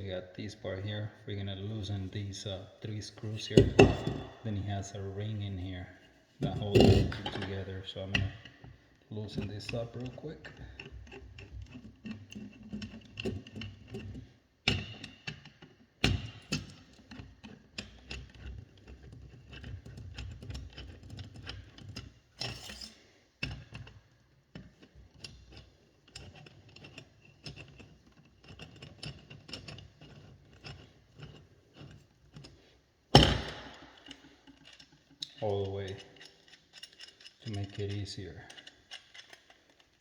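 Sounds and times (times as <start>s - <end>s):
tool clicking on metal screws: 10.0s - 32.6s, 33.2s - 40.0s.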